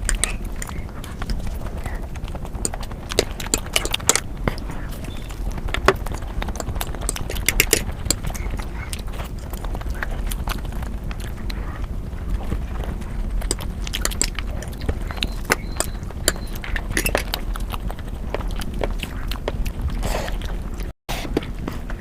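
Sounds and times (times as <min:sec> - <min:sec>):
chewing and crunching: 0:00.0 - 0:22.0
steady low hum: 0:00.0 - 0:22.0.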